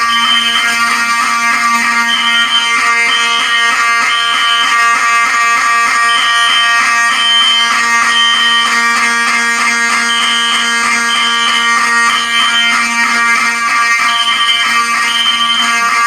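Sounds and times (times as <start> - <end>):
continuous buzzing alarm horn: 0.0 - 16.0
pulsing high alarm tone: 0.0 - 16.0.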